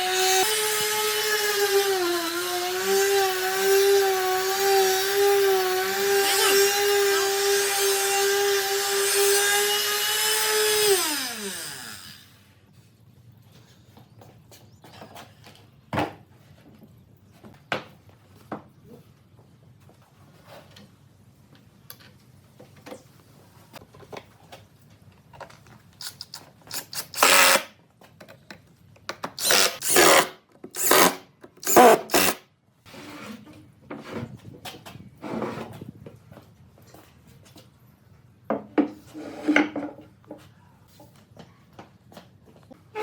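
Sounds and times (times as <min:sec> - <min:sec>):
power tool cutting wood: 0:00.0 - 0:12.5, 0:26.0 - 0:27.7, 0:29.4 - 0:32.4.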